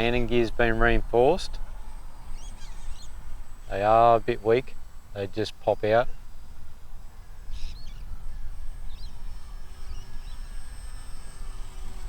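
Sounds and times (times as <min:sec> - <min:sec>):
faint high whine: 0:00.0 - 0:12.0
faint bird chirps: 0:01.8 - 0:03.8, 0:07.2 - 0:10.9.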